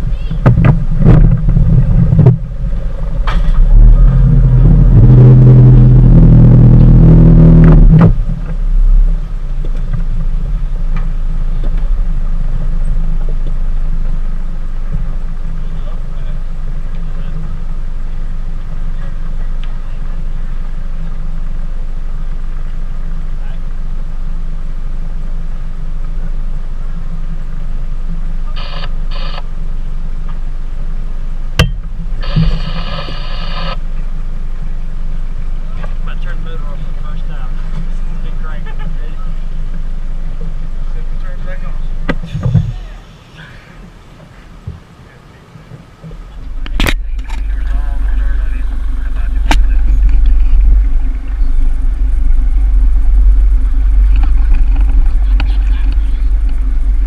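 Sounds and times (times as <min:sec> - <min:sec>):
boat engine rumbling: 0:00.0 - 0:57.0
loud low-pitched drone: 0:00.0 - 0:57.0
electronic beeps: 0:28.5 - 0:29.4, 0:31.6 - 0:33.8.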